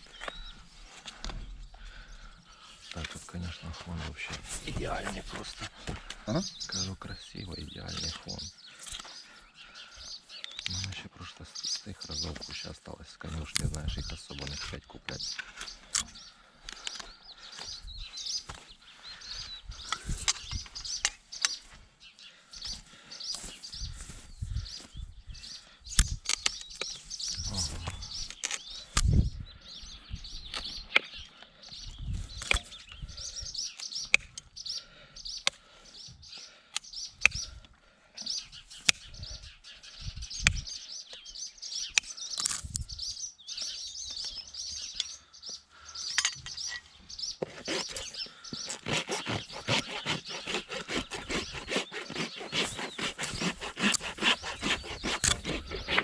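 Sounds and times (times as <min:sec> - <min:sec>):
small birds chirping: 0:00.0 - 0:56.0
rapid scraping strokes: 0:47.4 - 0:56.0.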